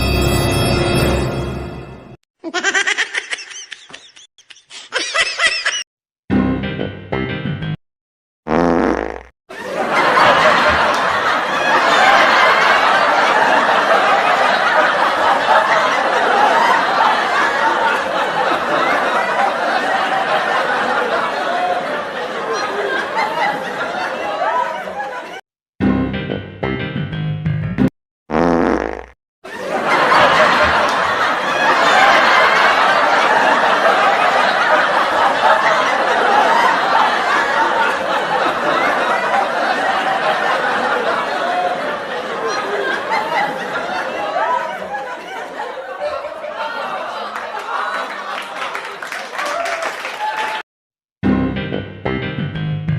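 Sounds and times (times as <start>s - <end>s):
people laughing: 2.4s - 5.9s, 9.5s - 25.4s, 29.5s - 50.6s.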